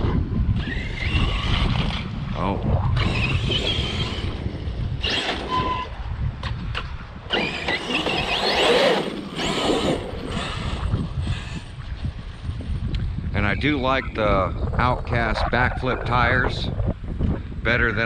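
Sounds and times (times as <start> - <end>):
rc truck motor whining: 0.6 - 2.1, 3.0 - 6.0, 7.3 - 12.5.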